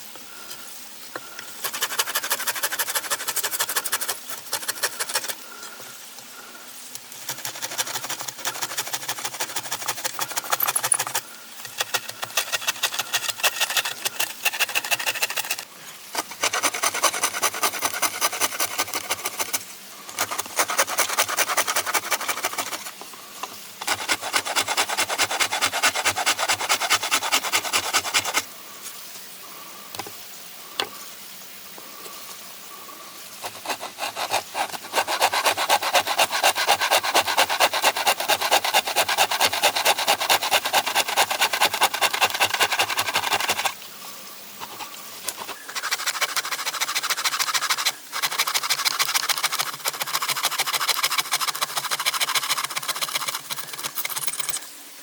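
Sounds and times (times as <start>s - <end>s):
wood being sanded by hand: 1.6s - 5.4s, 7.1s - 15.6s, 16.2s - 22.9s, 23.8s - 28.4s, 33.4s - 43.8s, 44.6s - 54.0s.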